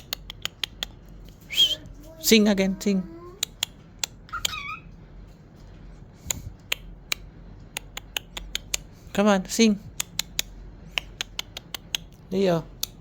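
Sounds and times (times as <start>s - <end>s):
sharp clicks and taps: 0.0s - 1.2s, 6.3s - 8.9s, 10.0s - 12.2s
cockatiel chirp: 4.3s - 4.9s.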